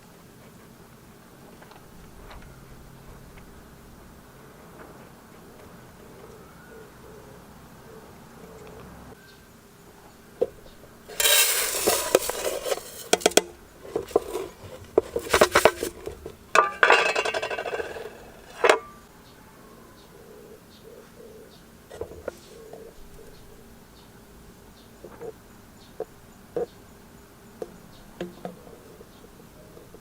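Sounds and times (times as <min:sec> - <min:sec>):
metal cookware clattering: 0:11.1 - 0:19.0.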